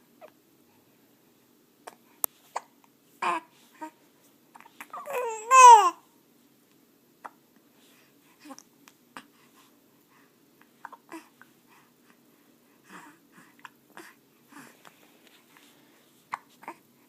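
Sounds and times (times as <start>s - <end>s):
soft breathing: 7.6s - 17.0s.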